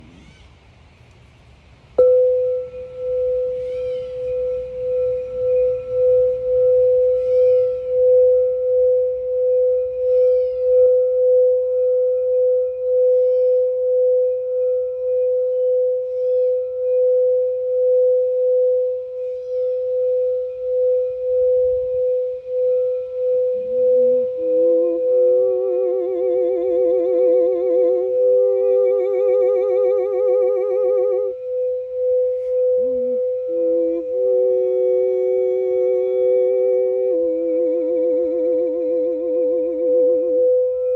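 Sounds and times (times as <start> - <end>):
bird chirping: 0.0 - 1.1, 2.0 - 11.0
singing bowl ringing: 1.9 - 40.9.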